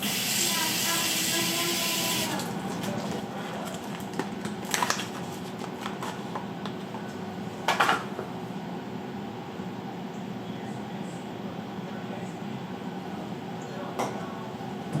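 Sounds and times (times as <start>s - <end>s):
water spraying from faucet: 0.0s - 2.5s.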